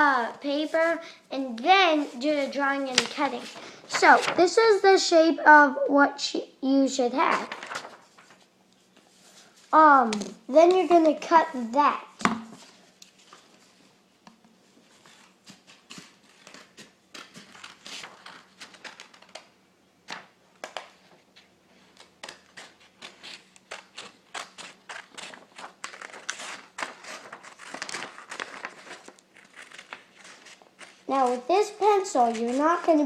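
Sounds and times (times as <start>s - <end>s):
paper rustling: 0.0s - 4.6s, 7.2s - 9.8s, 14.8s - 19.5s, 20.1s - 33.0s
scissors snipping paper: 22.0s - 31.5s.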